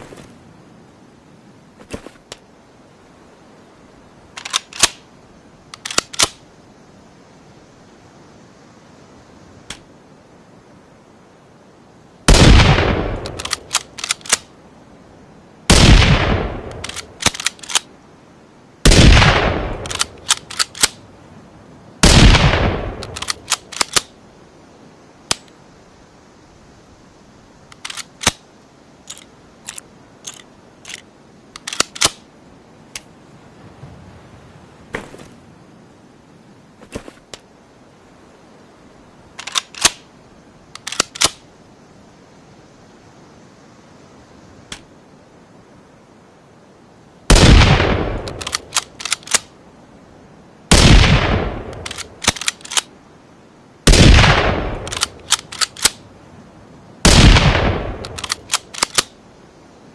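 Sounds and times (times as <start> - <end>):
rifle gunshots: 12.3 - 13.5, 15.7 - 17.0, 18.9 - 20.1, 22.0 - 23.2, 47.3 - 48.5, 50.7 - 52.4, 53.9 - 56.0, 57.0 - 58.4
sharp metallic clicks: 13.2 - 14.5, 19.7 - 21.0, 23.0 - 24.1, 29.0 - 32.2, 40.7 - 41.4, 48.1 - 49.5, 51.7 - 52.9, 54.2 - 56.0, 57.1 - 59.1.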